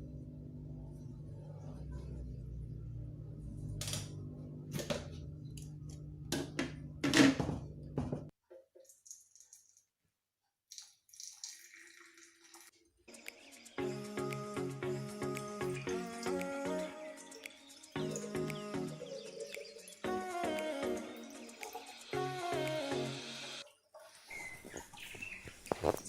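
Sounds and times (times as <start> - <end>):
liquid pouring and splashing: 10.7 - 13.0, 23.6 - 26.0
music: 13.1 - 23.6.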